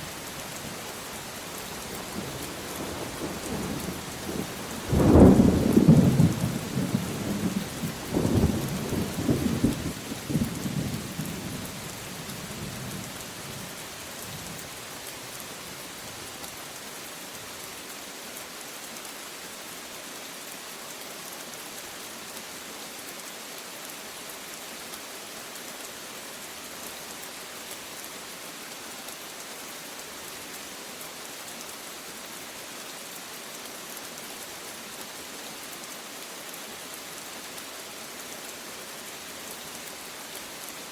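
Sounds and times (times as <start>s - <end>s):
steady rain falling: 0.0s - 40.9s
thunder rumbling: 4.8s - 11.0s.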